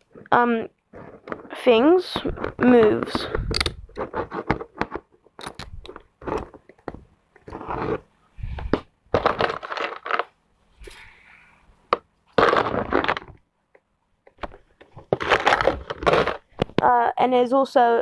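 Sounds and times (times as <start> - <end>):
fidget toy clicking and scraping: 1.0 - 6.8.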